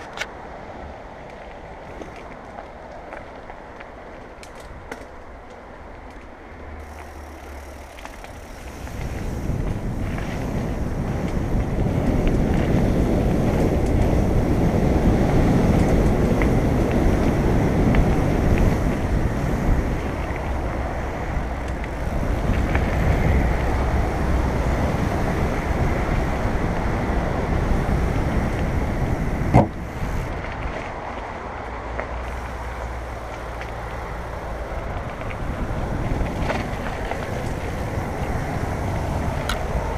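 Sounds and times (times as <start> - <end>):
tyres rattling over dirt trail: 0.0 - 39.9
wind rushing over microphone: 6.7 - 39.9.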